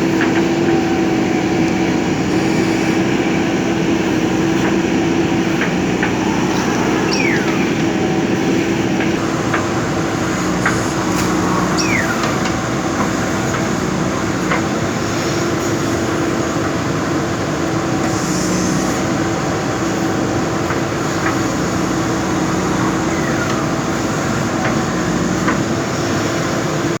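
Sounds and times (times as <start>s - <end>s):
diesel engine running: 0.0s - 27.0s
short falling squeaks: 6.5s - 7.8s, 11.2s - 12.4s.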